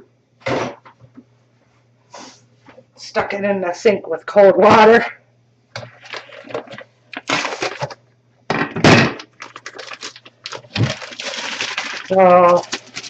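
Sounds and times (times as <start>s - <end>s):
plastic packaging crinkling: 5.8s - 8.0s, 9.1s - 13.0s.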